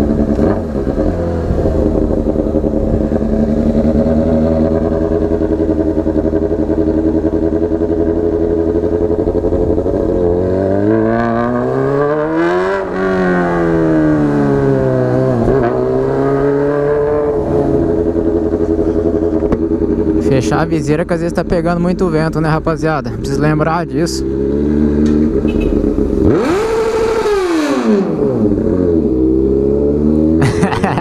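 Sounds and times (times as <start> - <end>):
motorcycle engine running and revving: 0.0 - 31.0.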